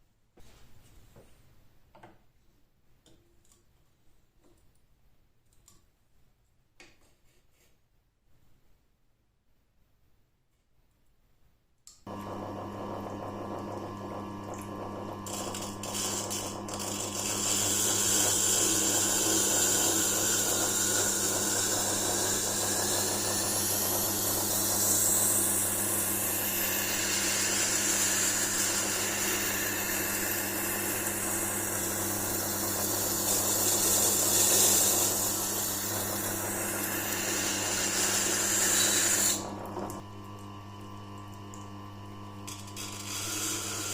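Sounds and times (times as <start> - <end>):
grinding machine motor humming: 12.1 - 38.6.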